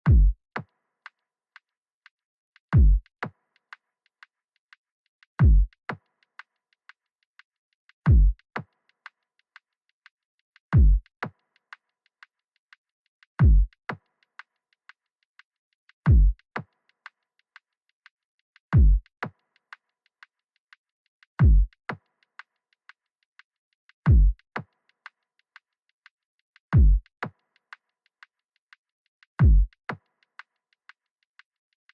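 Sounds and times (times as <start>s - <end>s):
deep electronic kick drum: 0.1s - 0.4s, 2.8s - 3.0s, 5.4s - 5.7s, 8.1s - 8.4s, 10.8s - 11.0s, 13.4s - 13.7s, 16.1s - 16.4s, 18.8s - 19.0s, 21.4s - 21.7s, 24.1s - 24.4s, 26.8s - 27.0s, 29.4s - 29.7s.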